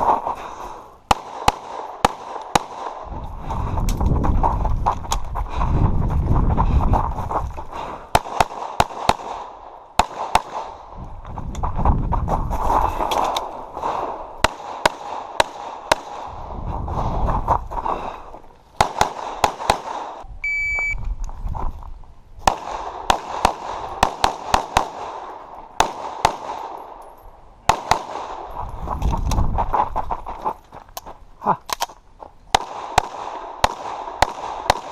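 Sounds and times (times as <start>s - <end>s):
pistol shots: 1.1s - 3.1s, 8.1s - 10.8s, 13.1s - 16.4s, 18.8s - 20.2s, 22.4s - 27.0s, 27.7s - 28.5s, 32.5s - 34.9s
shot timer beep: 20.4s - 21.0s.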